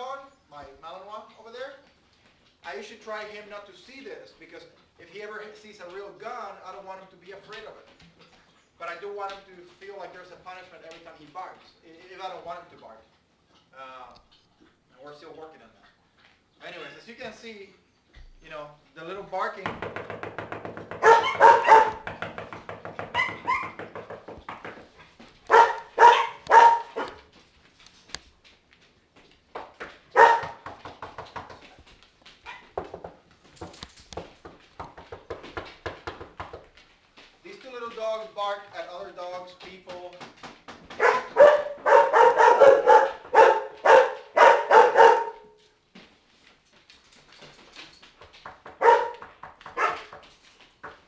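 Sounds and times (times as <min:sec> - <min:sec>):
small dogs yapping: 0:21.0 - 0:22.1, 0:23.1 - 0:23.9, 0:25.5 - 0:27.3, 0:30.1 - 0:30.6, 0:40.9 - 0:45.6, 0:48.8 - 0:49.2.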